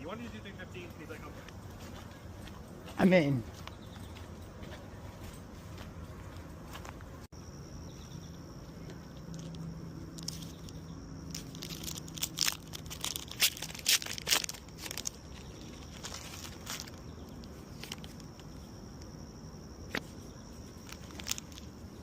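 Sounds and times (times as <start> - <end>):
foil wrapper crinkling: 9.4 - 17.0, 20.8 - 21.8.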